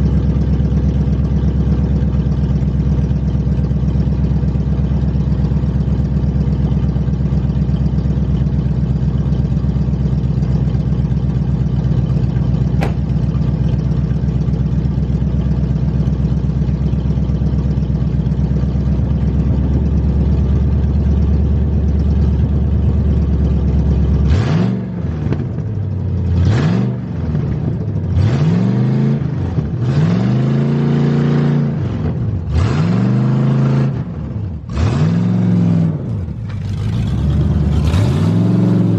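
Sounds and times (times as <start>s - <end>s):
car engine idling and revving: 0.0s - 38.9s.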